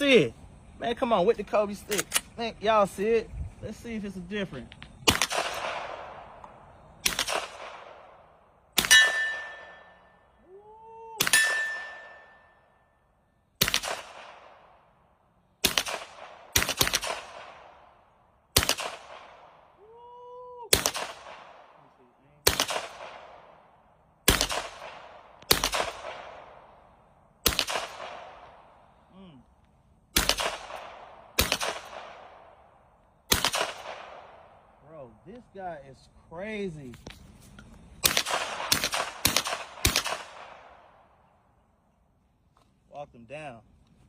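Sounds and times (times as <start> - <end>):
suppressed pistol shots with echo: 5.0 - 10.1, 11.2 - 12.6, 13.6 - 14.9, 15.6 - 19.7, 20.7 - 21.8, 22.4 - 26.8, 27.4 - 28.7, 30.1 - 34.6, 38.0 - 41.2.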